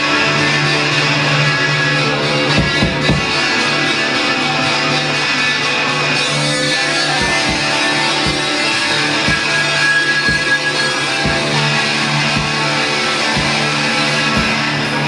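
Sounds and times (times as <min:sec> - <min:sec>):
loud electric guitar: 0:00.0 - 0:15.0
low drum thumps: 0:11.2 - 0:12.7.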